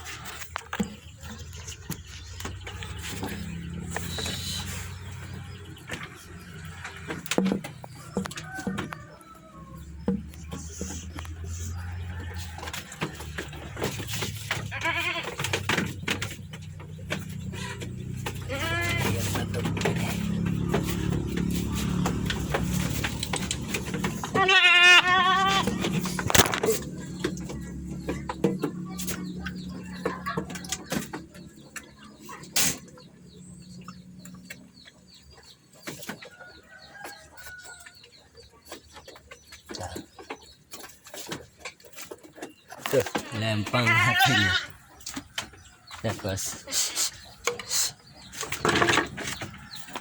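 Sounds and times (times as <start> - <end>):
chickens clucking: 0.0 - 50.0
small birds chirping: 0.0 - 50.0
goat bleating: 14.6 - 15.4, 18.4 - 19.6, 24.2 - 25.9, 43.2 - 44.8.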